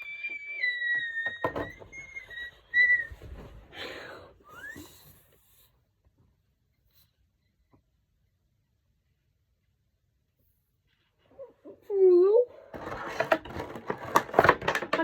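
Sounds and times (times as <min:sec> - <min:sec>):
person whistling: 0:00.0 - 0:03.4.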